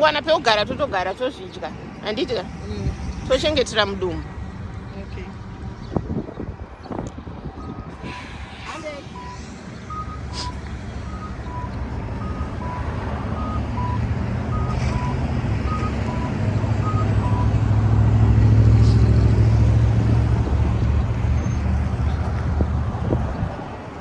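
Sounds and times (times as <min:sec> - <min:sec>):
heavy vehicle rumble: 0:00.0 - 0:24.0
street traffic: 0:00.0 - 0:24.0
two-pitch crossing signal beeps: 0:09.1 - 0:14.0.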